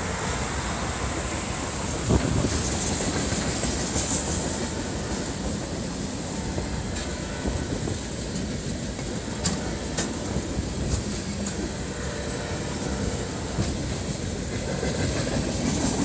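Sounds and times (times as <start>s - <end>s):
freight train cars rumbling past: 0.0s - 16.0s
wheels clacking over rail joints: 0.0s - 16.0s.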